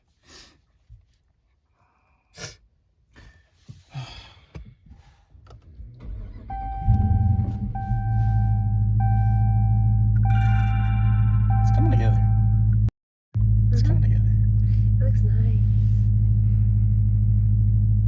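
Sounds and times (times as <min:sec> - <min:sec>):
car engine starting and idling: 0:05.3 - 0:18.0
chime tone: 0:06.7 - 0:12.8.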